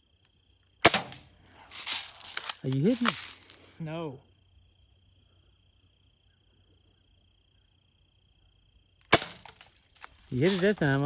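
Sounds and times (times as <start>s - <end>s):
high insect trill: 0.0s - 11.0s
gunshot: 0.8s - 1.3s, 9.1s - 9.6s.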